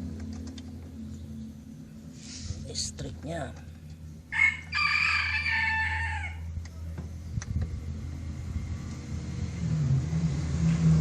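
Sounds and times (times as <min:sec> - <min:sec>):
low hum: 0:00.0 - 0:11.0
rooster crowing: 0:04.3 - 0:06.5.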